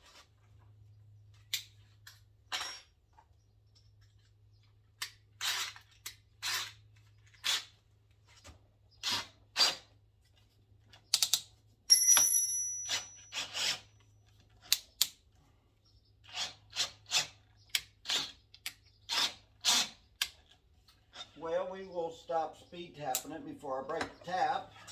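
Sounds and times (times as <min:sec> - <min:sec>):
ringing metal clink: 0:11.9 - 0:13.6.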